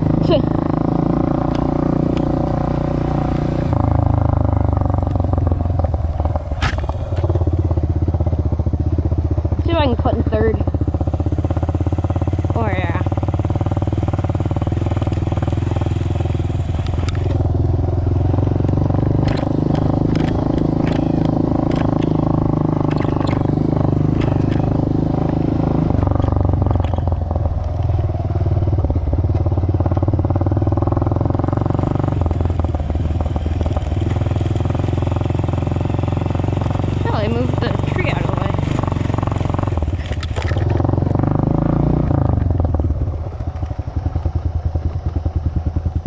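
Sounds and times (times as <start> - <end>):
off-road vehicle engine running: 0.0 - 46.0.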